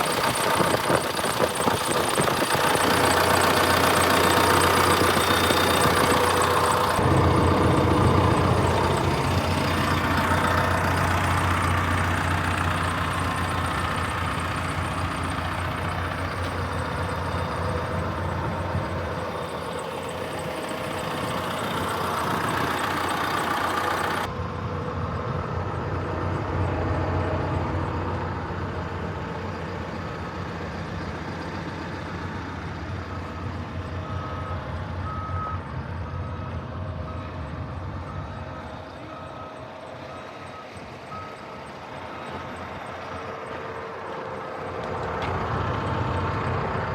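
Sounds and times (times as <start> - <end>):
diesel engine running: 0.0 - 46.9
faint beeps: 3.5 - 24.3.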